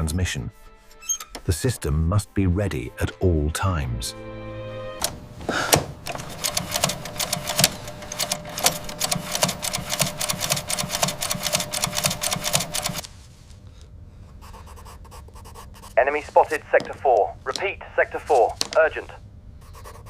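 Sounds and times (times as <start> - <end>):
telegraph key clicking: 5.0 - 13.0.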